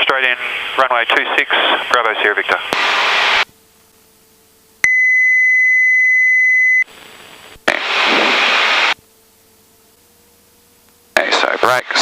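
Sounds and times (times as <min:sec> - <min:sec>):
high-pitched beep: 0:04.9 - 0:06.8
headset hiss: 0:06.9 - 0:09.0.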